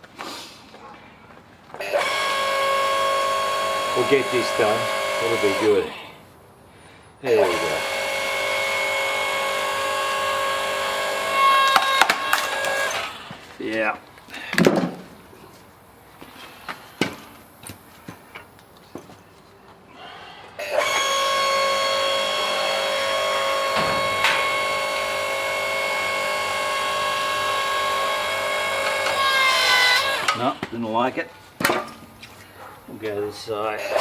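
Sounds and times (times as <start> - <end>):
log splitter whining: 1.8 - 6.2, 7.3 - 13.4, 20.0 - 32.8, 33.7 - 34.0.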